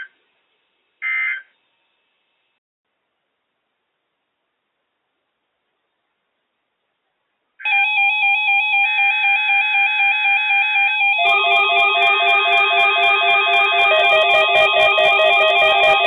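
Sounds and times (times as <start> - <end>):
bass line: 11.2 - 16.0
ticking beat: 11.2 - 16.0
trilling instrumental melody: 11.2 - 16.0.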